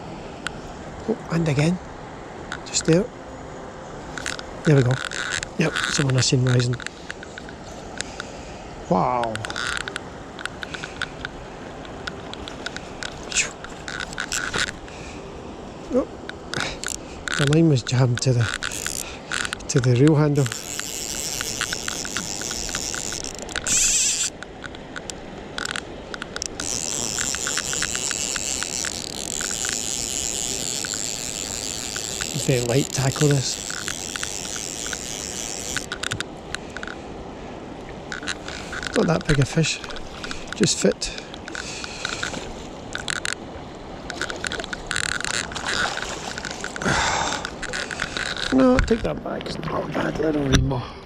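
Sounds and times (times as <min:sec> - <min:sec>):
river water rushing: 0:00.0 - 0:51.0
fishing reel ratchet ticking: 0:04.2 - 0:07.4, 0:09.4 - 0:11.1, 0:16.6 - 0:37.0, 0:38.1 - 0:43.4, 0:44.1 - 0:48.6
short splashes and clicks: 0:09.1 - 0:15.2, 0:16.2 - 0:37.0, 0:37.8 - 0:50.9.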